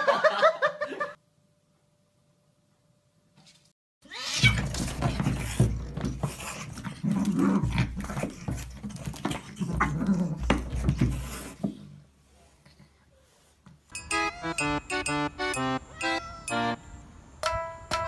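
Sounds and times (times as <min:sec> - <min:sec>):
sharp knocks and bumps: 0:04.4 - 0:11.7.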